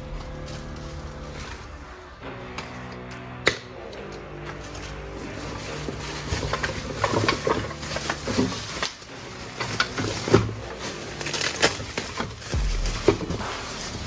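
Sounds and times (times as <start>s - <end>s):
packaging rustling: 4.6s - 14.0s
plastic parts clicking and knocking: 5.6s - 13.3s.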